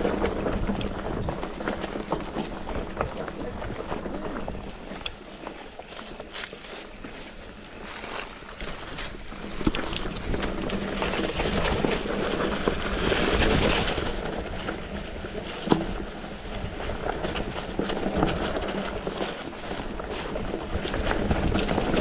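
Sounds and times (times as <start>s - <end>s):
bike rattling over bumps: 0.0s - 22.0s
bike tyres on dirt: 0.0s - 22.0s.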